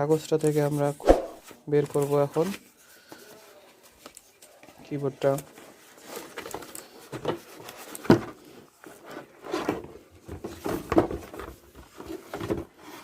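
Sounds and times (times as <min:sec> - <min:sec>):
paper rustling: 0:00.1 - 0:09.8.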